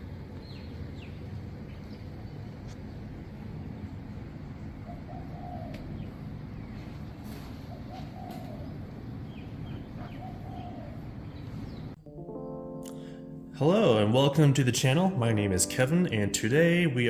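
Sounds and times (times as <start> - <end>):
low outdoor rumble: 0.0 - 12.0
bird giving low calls: 4.6 - 11.9.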